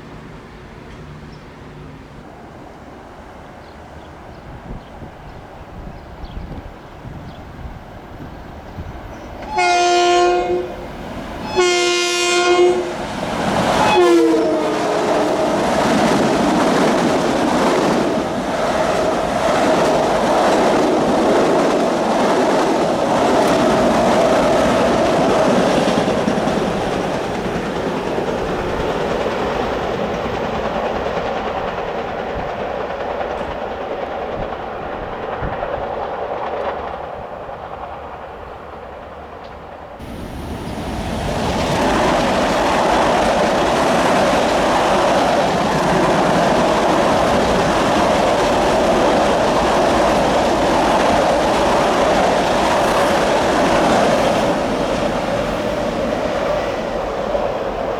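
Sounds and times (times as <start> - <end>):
train wheels on rails: 0.0 - 57.9
train horn blasts: 9.4 - 13.0, 13.8 - 15.6.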